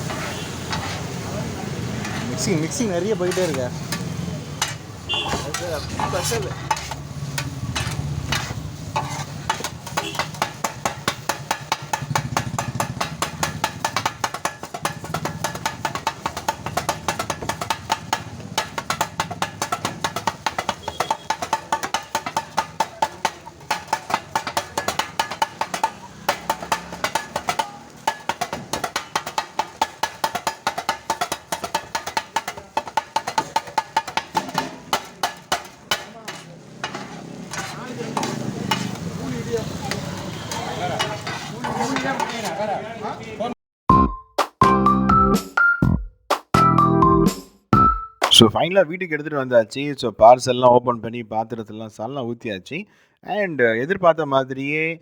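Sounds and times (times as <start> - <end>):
metal blades clanging on griddle: 0.0 - 1.2, 1.9 - 42.6.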